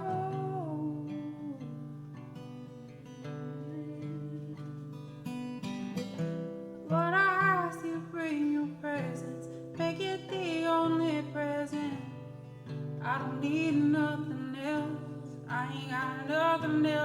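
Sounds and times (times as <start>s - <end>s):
person singing: 0.0s - 4.9s
acoustic guitar strumming: 0.0s - 17.0s.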